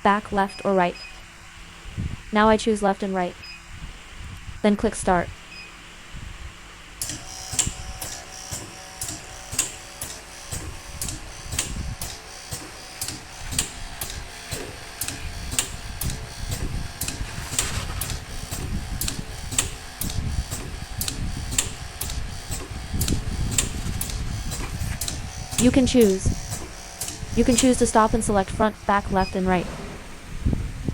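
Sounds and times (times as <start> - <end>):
low mechanical rumble: 0.0 - 30.9
testing machine clicking: 7.0 - 30.3.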